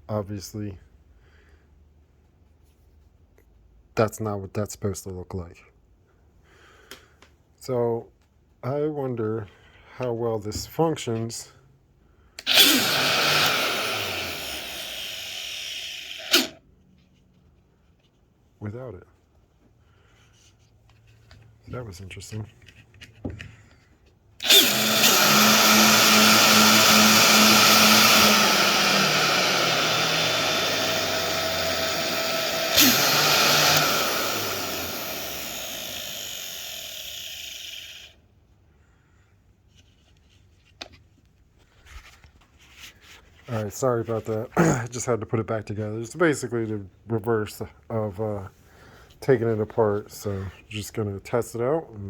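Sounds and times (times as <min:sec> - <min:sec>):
palm sander whirring: 0:12.4 - 0:16.6, 0:24.4 - 0:38.2.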